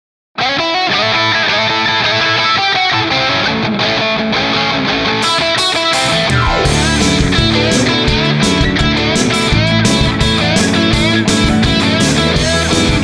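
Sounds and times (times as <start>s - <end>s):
electric guitar: 0.4s - 13.0s
rock band playing: 0.4s - 13.0s
falling pitch sweep: 5.9s - 9.0s.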